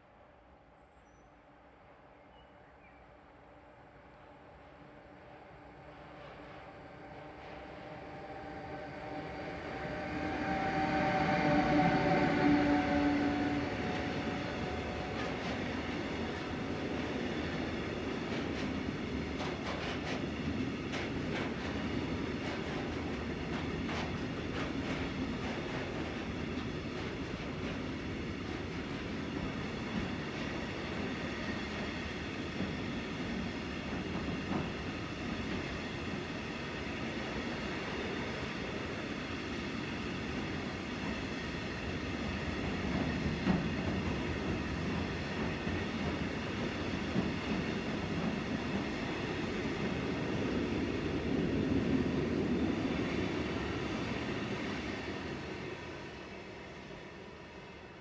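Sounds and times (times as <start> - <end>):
train wagons rumbling on rails: 5.8 - 56.1.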